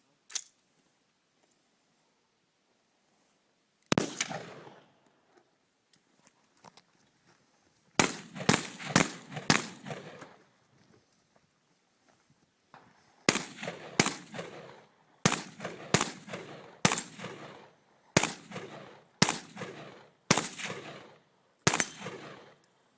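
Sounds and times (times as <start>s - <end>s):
gunshots with echo: 3.9s - 4.9s, 8.0s - 10.4s, 13.3s - 22.6s.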